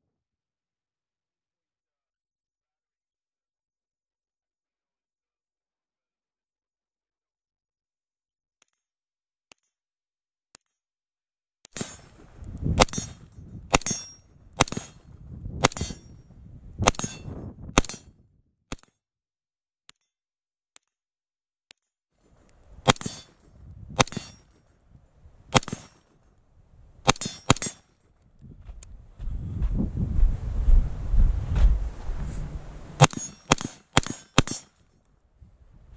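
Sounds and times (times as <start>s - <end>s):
wind rumble on microphone: 12.0s - 18.6s, 22.5s - 25.6s, 26.4s - 27.1s, 28.2s - 33.0s, 35.2s - 35.9s.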